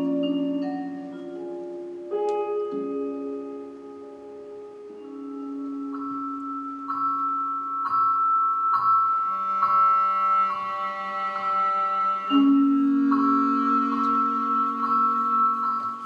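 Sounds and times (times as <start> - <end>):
held low chord tones: 0.0 - 16.0.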